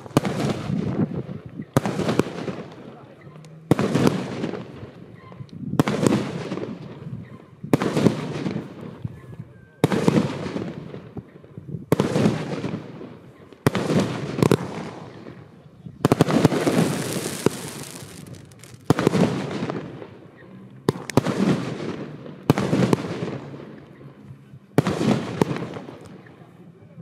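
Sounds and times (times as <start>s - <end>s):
firework bangs: 0.0s - 3.0s, 3.7s - 5.1s, 5.8s - 7.0s, 11.9s - 23.8s, 24.8s - 26.3s
firework hissing and crackling: 16.0s - 19.9s.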